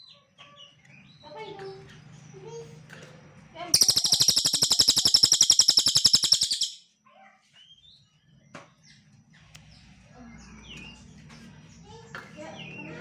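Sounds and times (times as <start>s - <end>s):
songbird rapid high trill: 3.8s - 6.8s
faint bird chirps: 3.8s - 6.9s.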